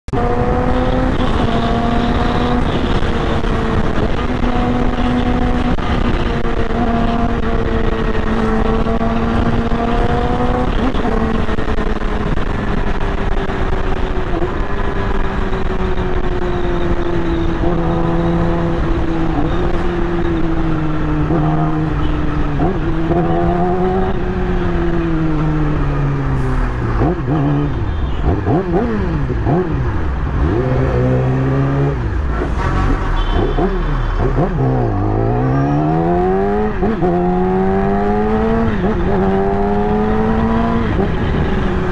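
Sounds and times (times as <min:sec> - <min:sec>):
motorcycle engine revving: 0:00.1 - 0:41.9.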